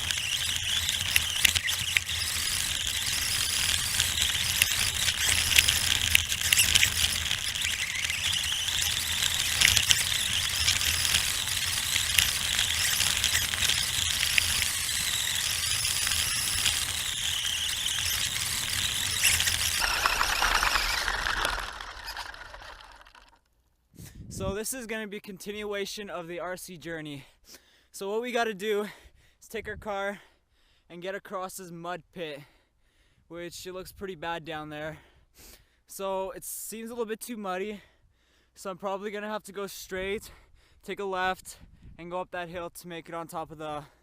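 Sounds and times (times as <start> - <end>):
electric motor whine: 0.0 - 23.3
chassis rattling and clicking: 0.0 - 23.4.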